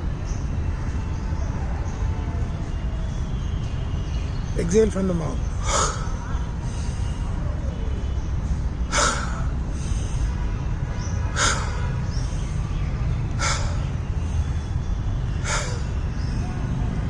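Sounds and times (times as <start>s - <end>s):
steady low rumble: 5.4s - 17.0s
person taking sharp breaths: 5.6s - 7.6s, 8.8s - 16.4s.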